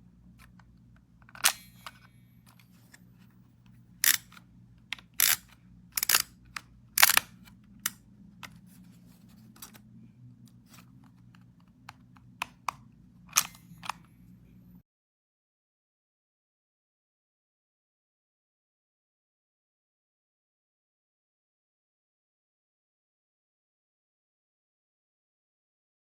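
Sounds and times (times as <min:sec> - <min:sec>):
camera shutter clicks: 0:01.4 - 0:02.0, 0:04.0 - 0:04.4, 0:05.2 - 0:06.3, 0:07.0 - 0:08.0, 0:13.3 - 0:14.0.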